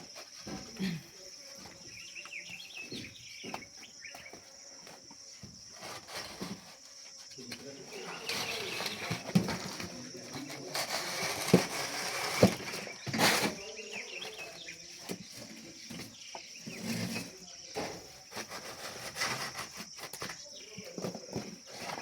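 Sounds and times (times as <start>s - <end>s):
scraping and clicking: 5.7s - 22.0s.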